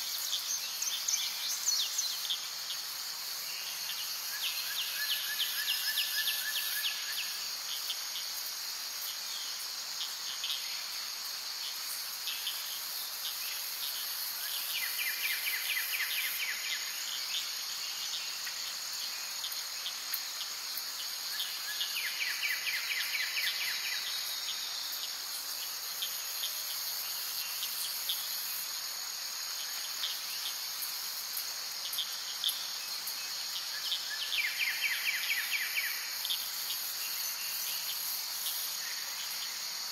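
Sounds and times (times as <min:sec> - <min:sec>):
insects chirring: 0:00.0 - 0:39.9.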